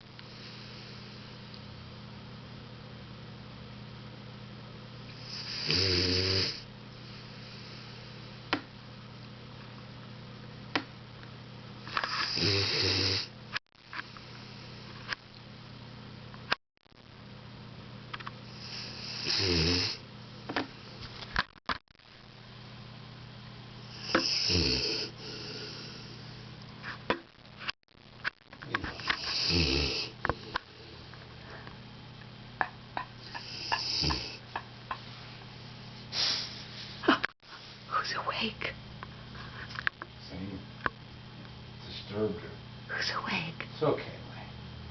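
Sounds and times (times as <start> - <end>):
dog snoring: 5.1 - 8.2, 11.9 - 13.3, 18.4 - 20.0, 23.8 - 26.3, 28.9 - 31.1, 33.2 - 34.5.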